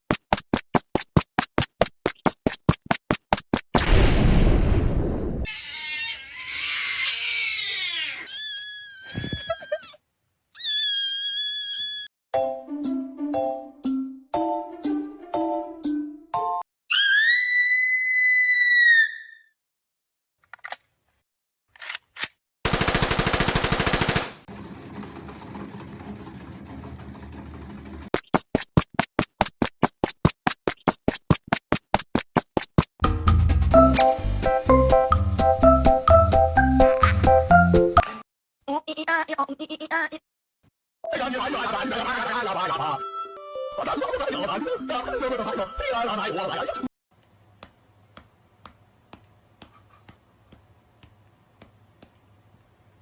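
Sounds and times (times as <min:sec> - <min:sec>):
loud noisy blast: 0:03.8 - 0:05.4
high-pitched scream-like cry: 0:05.5 - 0:10.0, 0:10.6 - 0:12.1, 0:16.9 - 0:19.5
warbling animal cries: 0:05.5 - 0:10.0, 0:10.6 - 0:12.1
fast machine-gun rattle: 0:22.7 - 0:24.5.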